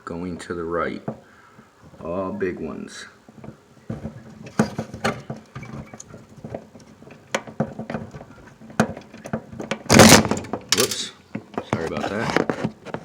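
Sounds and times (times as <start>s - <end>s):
small clicks and scrapes: 10.7s - 13.0s.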